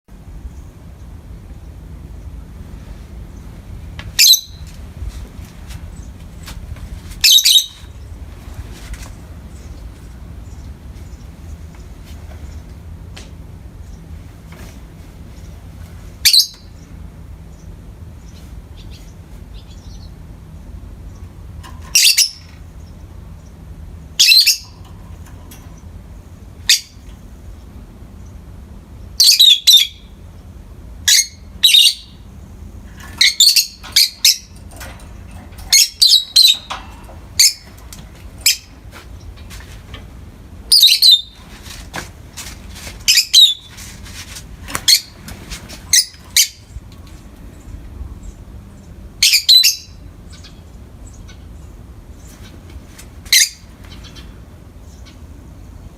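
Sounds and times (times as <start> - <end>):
steady low hum: 0.1 - 55.9
lovebirds chirping shrilly: 4.2 - 4.7, 7.2 - 8.2, 16.2 - 20.2, 21.9 - 23.6, 24.2 - 24.8, 29.0 - 30.2, 31.1 - 32.4, 33.1 - 34.6, 35.6 - 36.7, 37.3 - 37.8, 40.7 - 41.5, 43.0 - 43.8, 44.8 - 45.2, 45.9 - 46.8, 49.2 - 51.6, 53.3 - 55.3.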